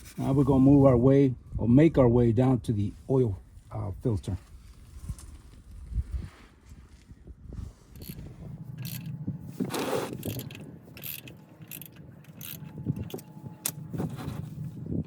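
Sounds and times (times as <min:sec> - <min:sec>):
tool scrape: 0:07.7 - 0:12.6
metal tool clicks and knocks: 0:10.2 - 0:13.8.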